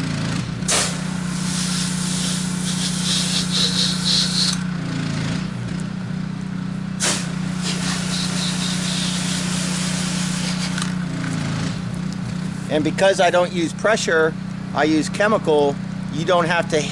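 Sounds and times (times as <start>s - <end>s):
pressure washer engine running: 0.0s - 16.9s
spray hiss: 0.7s - 4.5s, 7.0s - 10.8s
sharp burst of noise: 0.7s - 4.6s, 7.0s - 10.8s.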